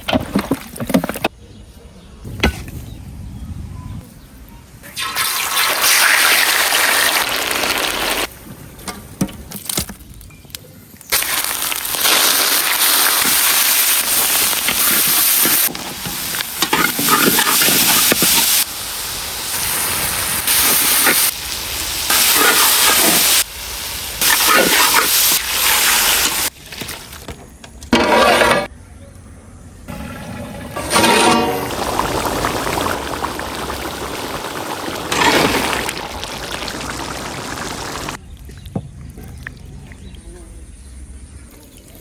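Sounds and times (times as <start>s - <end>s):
food sizzling in hot oil: 5.0s - 8.3s, 11.1s - 26.5s, 30.0s - 38.2s.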